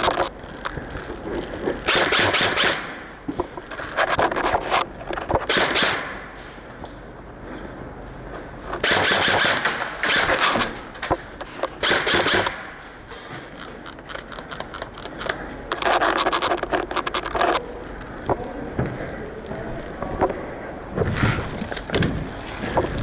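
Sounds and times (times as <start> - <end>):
airsoft gun rattling bursts: 0.0 - 6.3, 8.8 - 12.8, 13.5 - 17.6.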